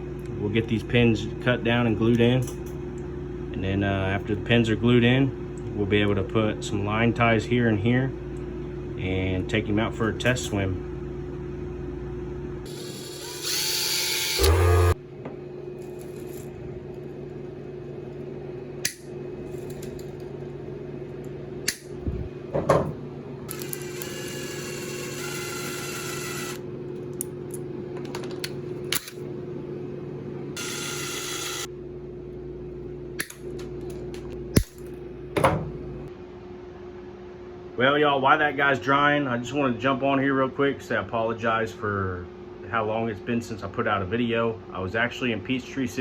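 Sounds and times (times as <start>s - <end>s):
steady low hum: 0.0s - 46.0s
small tool whirring with high whine: 12.6s - 17.2s, 23.4s - 26.7s, 30.6s - 31.7s.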